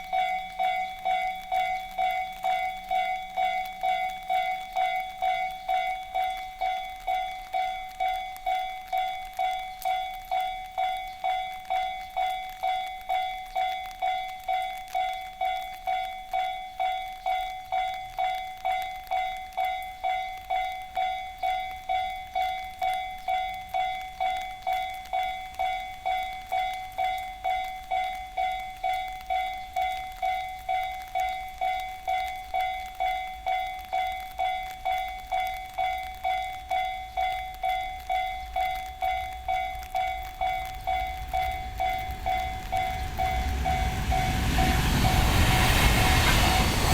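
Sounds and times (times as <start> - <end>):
freight train rumble: 37.9 - 46.9.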